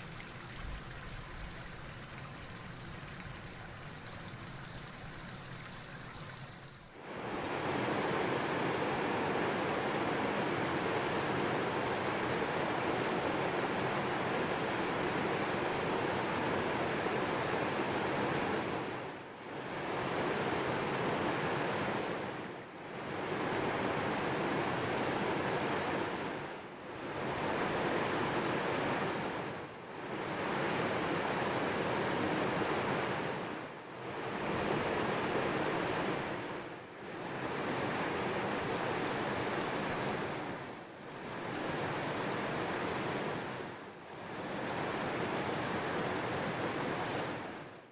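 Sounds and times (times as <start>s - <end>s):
flowing spring water: 0.0s - 7.0s.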